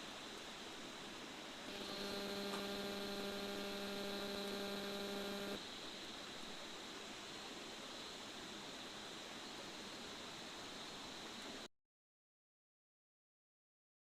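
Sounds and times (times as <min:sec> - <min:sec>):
faint steady hiss: 0:00.0 - 0:11.7
buzzy hum: 0:01.6 - 0:05.6.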